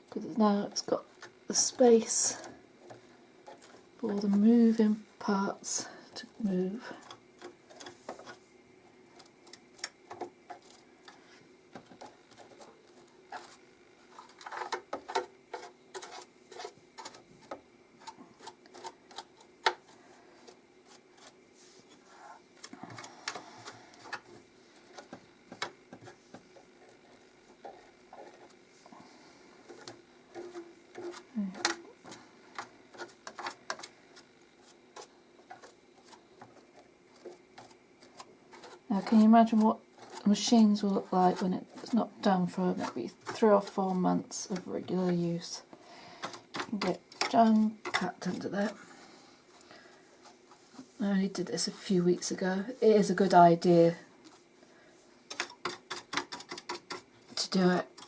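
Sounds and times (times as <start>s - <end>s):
brushing scrapes: 10.5s - 25.2s, 25.9s - 45.6s.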